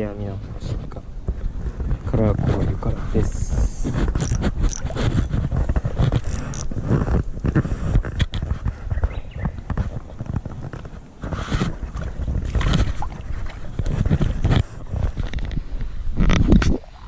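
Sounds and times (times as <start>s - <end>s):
wind buffeting microphone: 0.0s - 17.0s
handling rustles and knocks: 3.8s - 16.5s.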